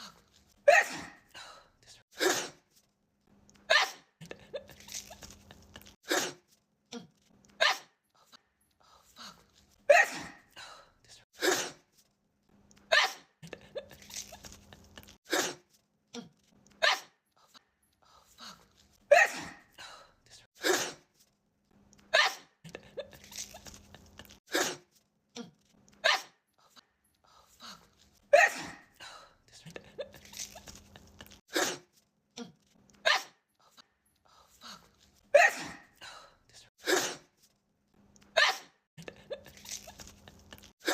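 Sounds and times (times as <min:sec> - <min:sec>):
woman sneezing: 0:00.7 - 0:01.2, 0:02.2 - 0:02.6, 0:06.0 - 0:06.4, 0:09.9 - 0:10.4, 0:11.4 - 0:11.9, 0:15.3 - 0:15.6, 0:19.1 - 0:19.7, 0:20.6 - 0:21.1, 0:28.3 - 0:28.9, 0:31.5 - 0:31.9, 0:35.3 - 0:35.9, 0:36.8 - 0:37.3, 0:38.4 - 0:38.8.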